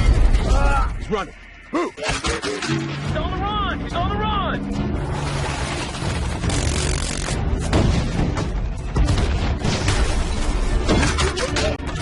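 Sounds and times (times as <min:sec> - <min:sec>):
dramatic orchestral score: 0:00.0 - 0:12.0.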